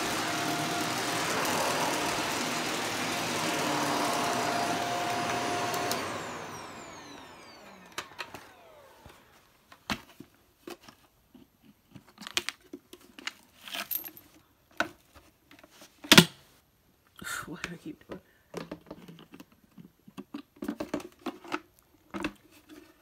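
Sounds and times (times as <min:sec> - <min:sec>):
vacuum cleaner motor spinning down: 0:00.0 - 0:09.5.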